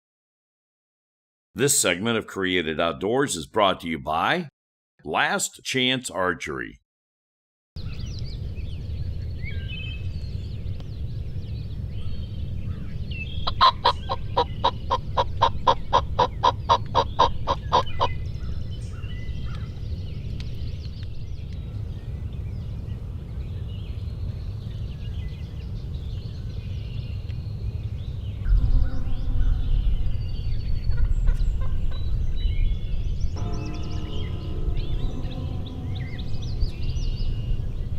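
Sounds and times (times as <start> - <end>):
faint songbird chirps: 7.8 - 37.9
steady low rumble: 7.8 - 37.9
turkey calling: 13.4 - 18.6.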